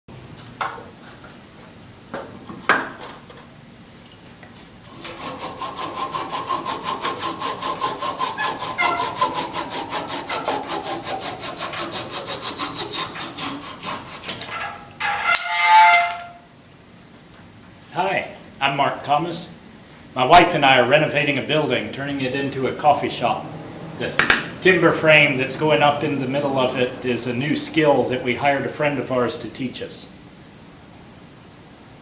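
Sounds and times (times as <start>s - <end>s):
hand saw cutting timber: 4.9s - 16.0s.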